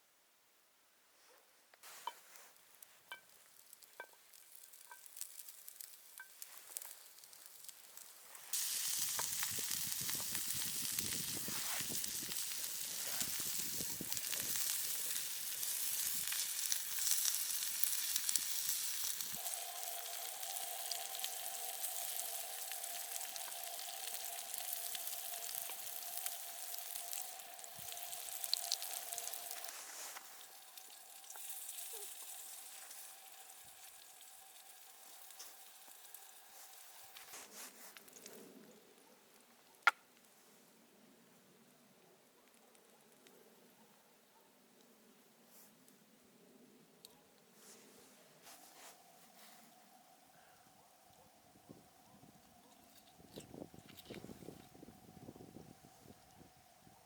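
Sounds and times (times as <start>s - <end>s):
food sizzling in a pan: 1.9s - 37.6s.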